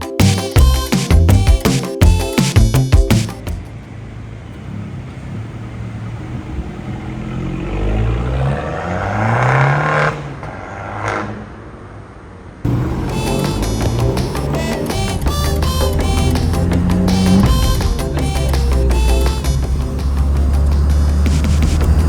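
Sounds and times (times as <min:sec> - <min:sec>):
car engine accelerating: 0:03.5 - 0:11.6, 0:12.6 - 0:22.0.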